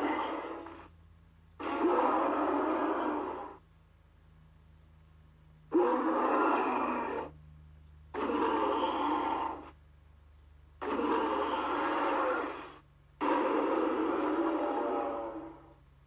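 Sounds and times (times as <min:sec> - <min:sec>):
monster roars: 0:00.0 - 0:00.9, 0:01.6 - 0:03.6, 0:05.7 - 0:07.3, 0:08.1 - 0:09.8, 0:10.8 - 0:15.8.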